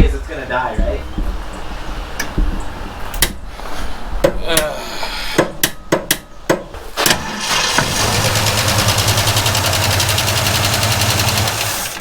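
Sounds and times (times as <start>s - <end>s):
starter motor cranking: 7.0s - 12.0s.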